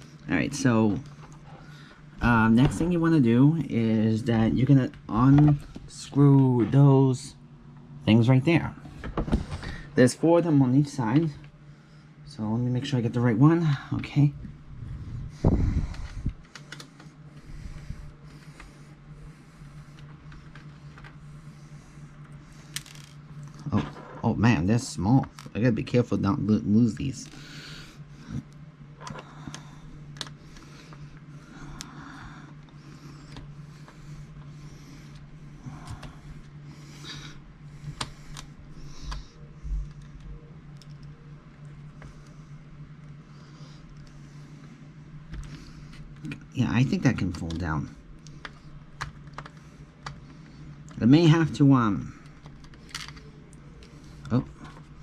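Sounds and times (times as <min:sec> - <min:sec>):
low steady hum: 0:00.0 - 0:55.0
person breathing heavily: 0:14.7 - 0:23.0, 0:27.3 - 0:40.0.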